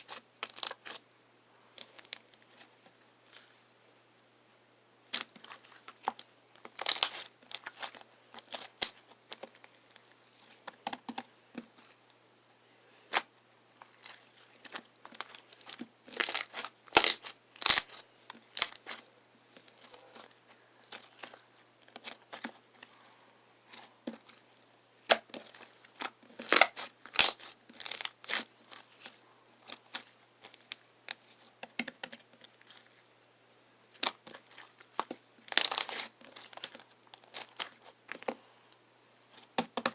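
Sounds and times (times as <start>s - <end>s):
slime crackling and popping: 5.1s - 9.5s, 13.9s - 19.0s, 25.0s - 32.8s, 33.9s - 38.3s.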